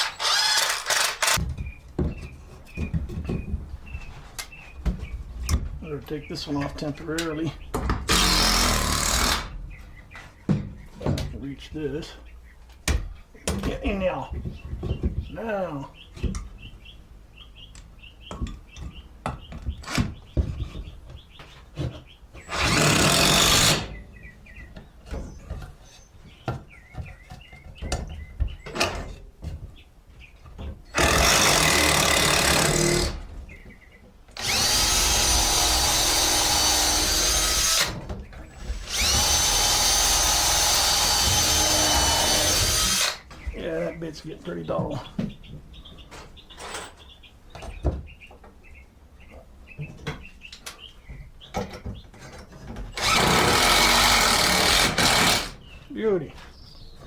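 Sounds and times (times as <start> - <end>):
power drill boring into wood: 0.0 - 1.4, 8.1 - 9.5, 22.5 - 23.9, 31.0 - 33.2, 34.4 - 38.0, 38.6 - 43.2, 53.0 - 55.6.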